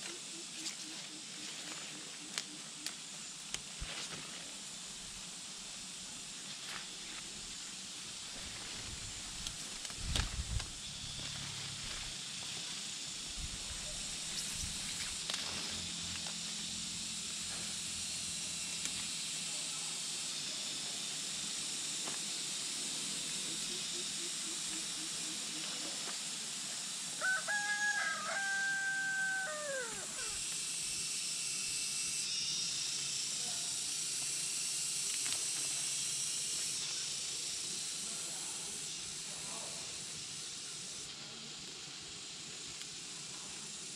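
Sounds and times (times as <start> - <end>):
steady high hiss: 0.0 - 43.9
rooster crowing: 27.2 - 30.4.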